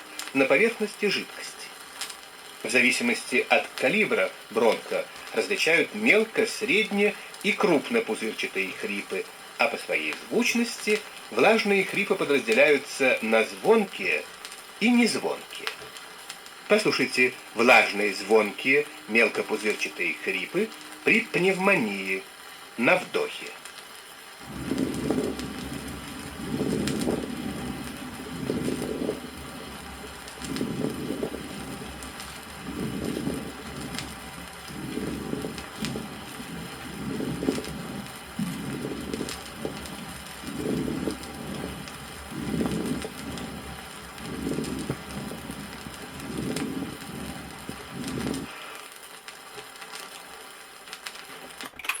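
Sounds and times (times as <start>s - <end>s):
fine bubbling lung crackles: 0.0s - 51.6s
vinyl record hiss and clicks: 0.0s - 52.0s
breathing through a stethoscope: 7.1s - 7.4s, 24.4s - 49.0s.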